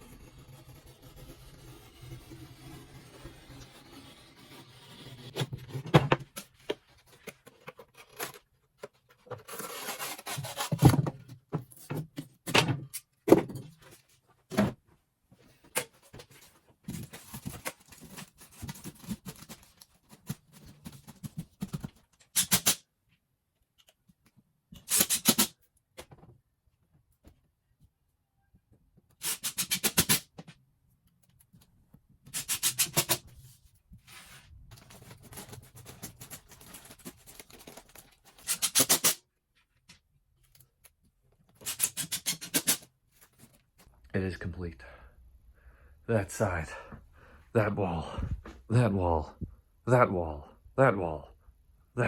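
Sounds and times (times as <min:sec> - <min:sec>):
scraping and rubbing drywall: 0:00.0 - 0:12.2, 0:32.3 - 0:39.2, 0:41.6 - 0:43.5.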